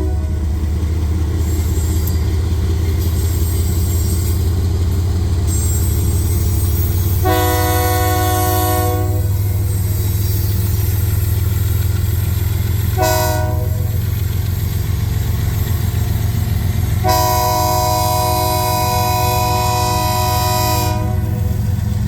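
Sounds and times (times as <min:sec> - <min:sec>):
locomotive air horn blasts: 0:00.0 - 0:00.5, 0:07.2 - 0:10.0, 0:12.9 - 0:14.0, 0:16.9 - 0:21.8
locomotive engine rumble: 0:00.0 - 0:22.0.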